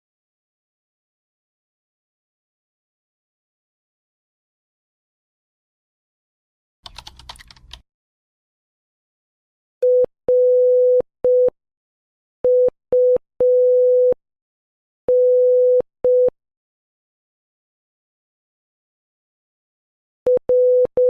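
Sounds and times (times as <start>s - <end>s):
morse code beeps: 12.5s - 14.2s, 20.3s - 21.0s.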